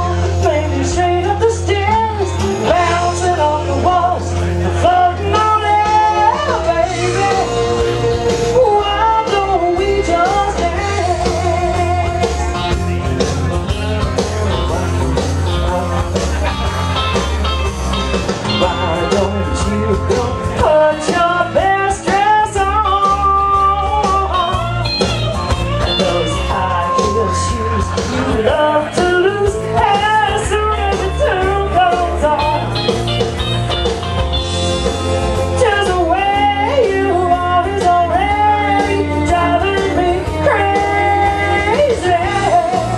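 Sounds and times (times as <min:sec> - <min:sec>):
rock and roll song with vocals: 0:00.0 - 0:42.9.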